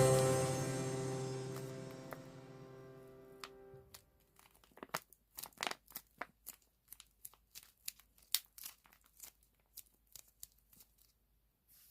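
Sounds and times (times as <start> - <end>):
squishy toy crackling: 3.9 - 11.2.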